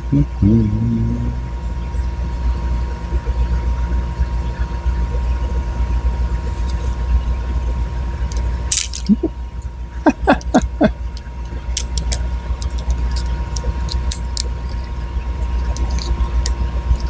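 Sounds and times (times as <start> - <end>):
steady low hum: 0.0 - 17.0
light clicks of metal pieces: 8.3 - 9.2, 10.2 - 15.0, 15.6 - 17.0.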